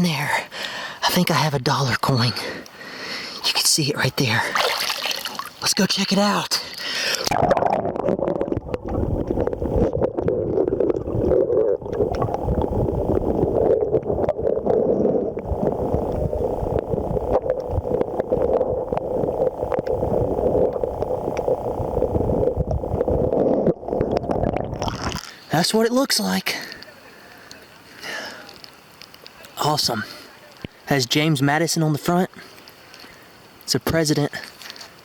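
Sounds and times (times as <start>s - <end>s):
underwater river rushing: 4.1s - 25.9s.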